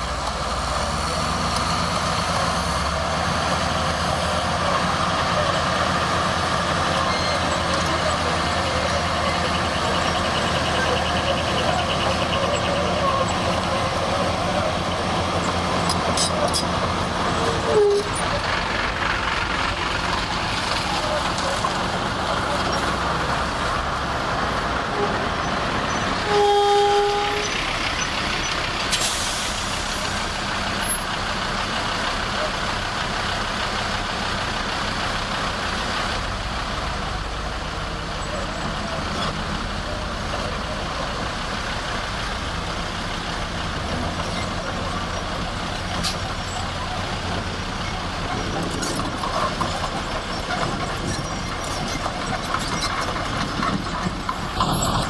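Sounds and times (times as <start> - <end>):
heavy diesel machinery engine: 0.0 - 55.0
short horn toot: 26.2 - 27.6.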